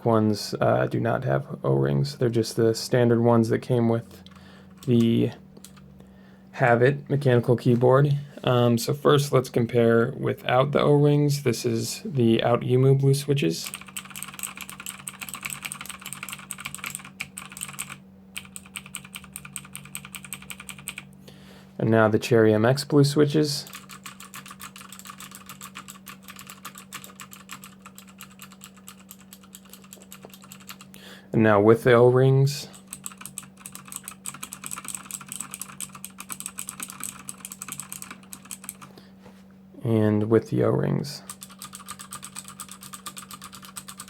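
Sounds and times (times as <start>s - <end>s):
fast typing on mechanical keyboard: 13.6s - 21.1s, 23.7s - 30.9s, 32.8s - 38.9s, 41.3s - 44.0s.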